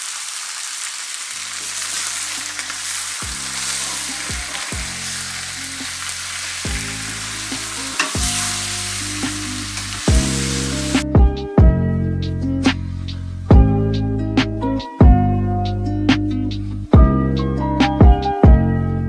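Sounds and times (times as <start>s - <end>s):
onions sizzling in oil: 0.0s - 11.0s
stirring clicks: 1.5s - 10.2s
background music with bass: 3.2s - 19.0s.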